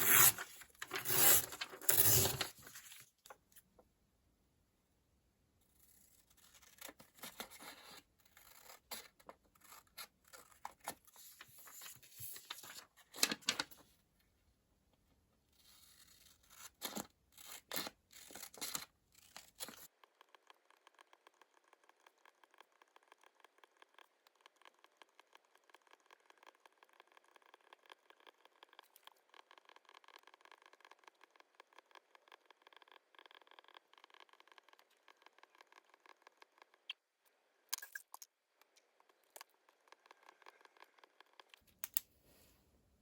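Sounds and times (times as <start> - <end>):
paper tearing and crinkling: 0.0 - 3.0
scratches and small taps: 18.6 - 37.0, 38.6 - 42.0.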